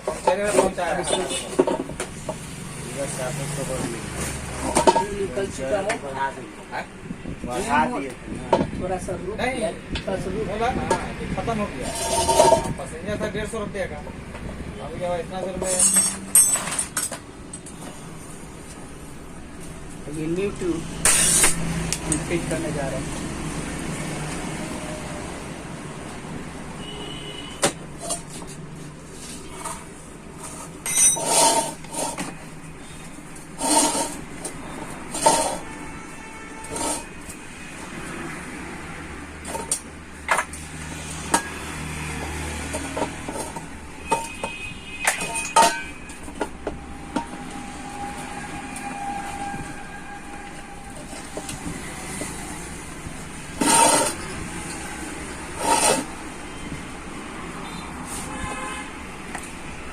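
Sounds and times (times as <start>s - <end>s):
metal tools clanking on wheel rim: 0.0s - 6.2s, 11.8s - 13.4s, 15.4s - 18.8s, 21.0s - 22.8s, 27.6s - 28.6s, 29.2s - 37.4s, 39.4s - 41.6s, 42.6s - 47.6s, 49.1s - 56.8s
traffic noise: 0.0s - 59.9s.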